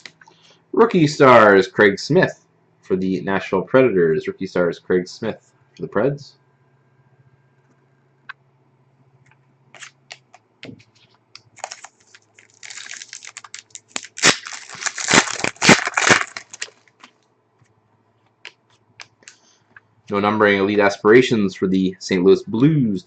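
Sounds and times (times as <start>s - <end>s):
card pack wrapper crinkling: 9.8s - 10.3s, 11.4s - 17.2s.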